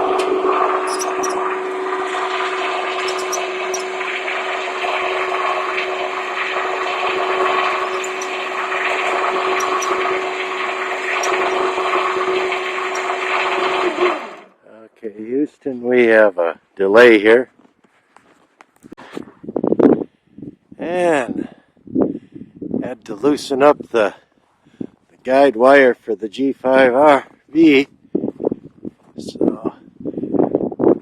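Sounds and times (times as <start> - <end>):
electric winch motor whining: 0.0 - 14.6.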